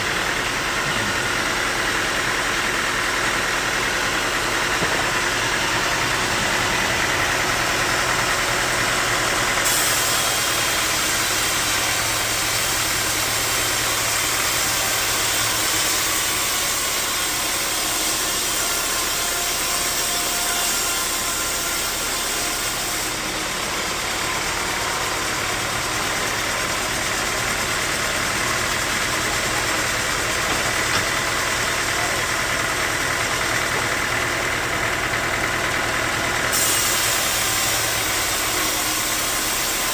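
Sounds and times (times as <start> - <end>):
sawmill machinery droning: 0.0 - 39.9.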